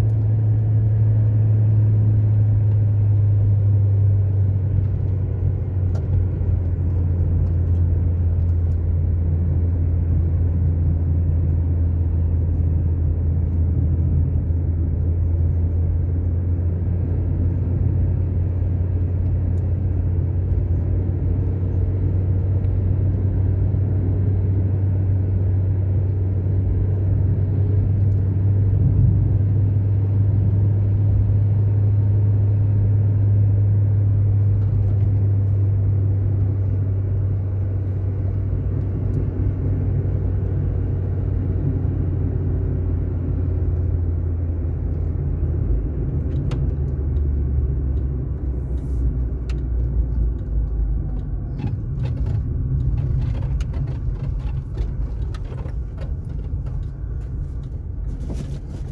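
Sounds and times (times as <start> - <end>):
car engine rumble: 0.0 - 58.9
tyre noise on asphalt: 37.2 - 58.9.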